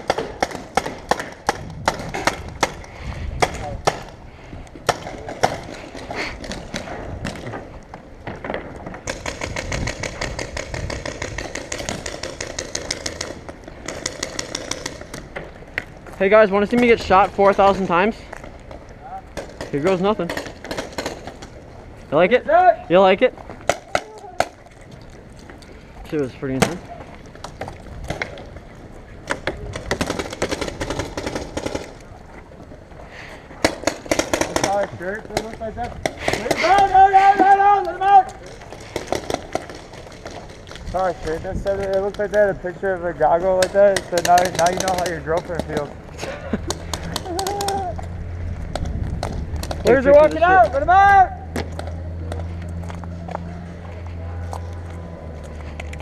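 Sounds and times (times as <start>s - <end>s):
paintball markers firing: 0.0s - 4.2s, 8.2s - 15.4s, 19.3s - 21.6s, 29.2s - 32.1s, 33.6s - 36.9s, 38.4s - 40.9s, 43.6s - 46.0s, 46.6s - 48.0s.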